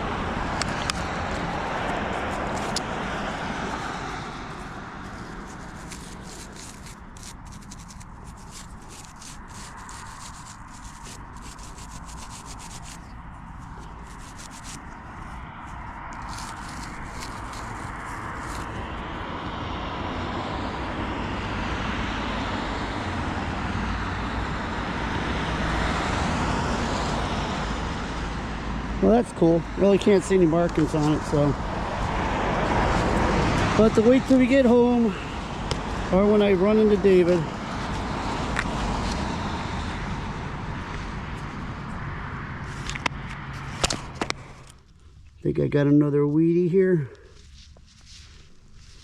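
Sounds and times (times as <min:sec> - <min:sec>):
crackly scratching on microphone: 0:00.0 - 0:19.1, 0:29.0 - 0:42.0, 0:42.6 - 0:45.4, 0:47.2 - 0:49.0
road traffic noise: 0:00.0 - 0:49.0.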